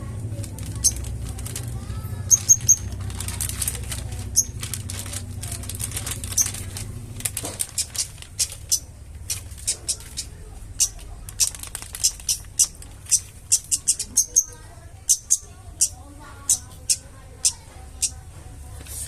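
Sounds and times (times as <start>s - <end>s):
bird giving sharp chips: 2.3s - 14.5s.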